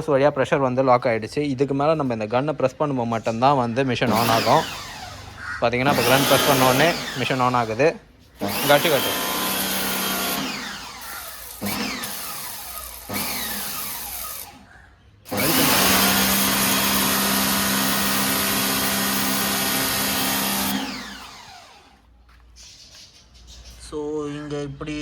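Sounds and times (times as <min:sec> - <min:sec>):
pressure washer motor and pump: 0:04.0 - 0:14.6, 0:15.3 - 0:22.1.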